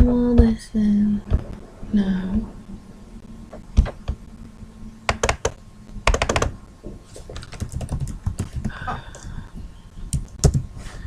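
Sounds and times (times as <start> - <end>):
keyboard typing clicks: 5.1 - 6.5, 7.4 - 9.3, 10.1 - 10.6.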